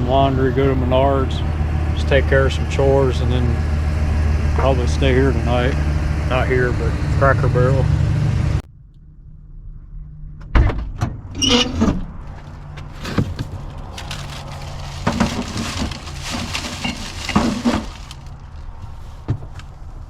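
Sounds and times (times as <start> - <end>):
objects and doors clunking: 10.4 - 18.3.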